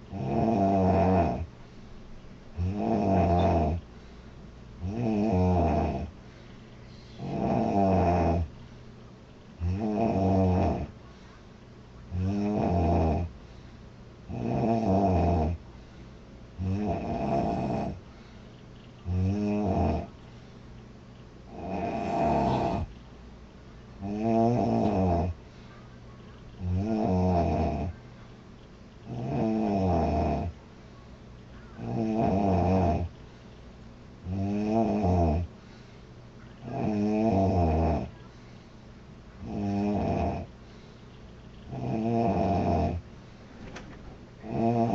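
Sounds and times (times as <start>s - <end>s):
woman snoring loudly: 0.1s - 1.5s, 2.6s - 3.8s, 4.8s - 6.1s, 7.2s - 8.5s, 9.6s - 10.9s, 12.2s - 13.3s, 14.3s - 15.6s, 16.6s - 18.0s, 19.1s - 20.1s, 21.5s - 22.9s, 24.0s - 25.4s, 26.6s - 28.0s, 29.1s - 30.5s, 31.8s - 33.1s, 34.3s - 35.5s, 36.6s - 38.1s, 39.4s - 40.5s, 41.7s - 43.0s, 44.4s - 44.9s.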